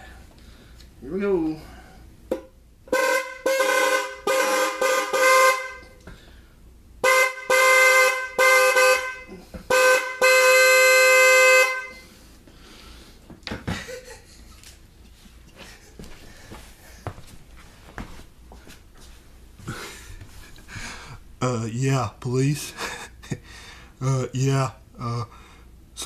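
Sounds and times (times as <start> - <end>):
two-note car horn honks: 2.9 - 6.0, 7.0 - 12.1.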